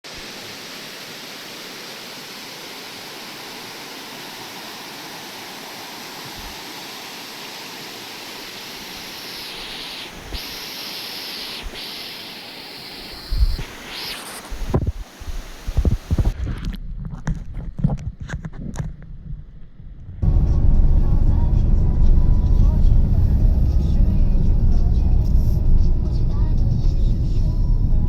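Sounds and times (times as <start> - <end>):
higher bright hiss: 0.0 - 16.4
running water rushing: 0.0 - 16.4.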